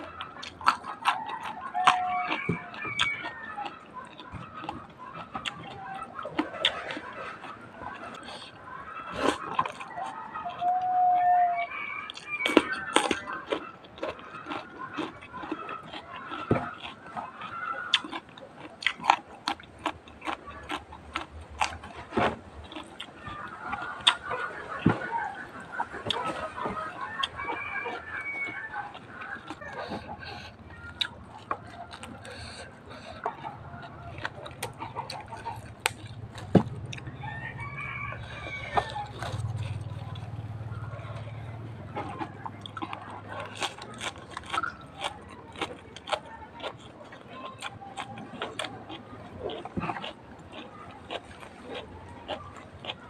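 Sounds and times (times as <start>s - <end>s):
chewing with crunches: 0.0s - 53.0s
rooster crowing: 1.0s - 4.7s, 9.2s - 13.4s, 26.4s - 30.0s, 36.9s - 40.2s.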